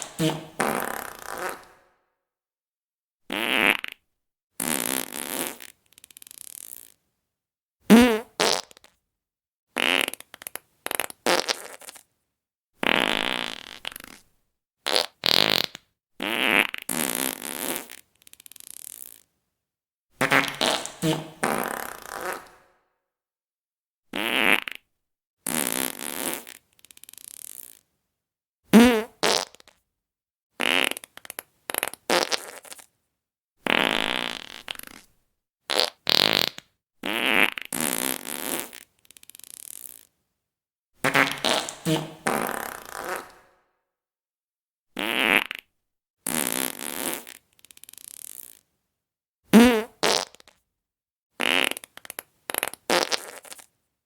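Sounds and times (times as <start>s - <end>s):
fart sound effects: 0.0s - 1.9s, 3.3s - 4.0s, 7.9s - 8.8s, 20.2s - 22.7s, 24.1s - 24.8s, 28.7s - 29.7s, 30.6s - 32.8s, 33.6s - 35.1s, 35.7s - 40.0s, 41.0s - 43.6s, 45.0s - 45.6s, 46.3s - 48.6s, 49.5s - 50.5s, 51.4s - 53.7s.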